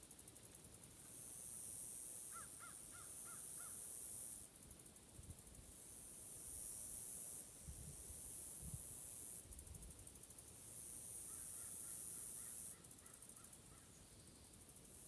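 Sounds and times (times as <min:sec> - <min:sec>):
high-pitched woodland hiss: 0:00.0 - 0:15.0
crow cawing: 0:02.3 - 0:03.7.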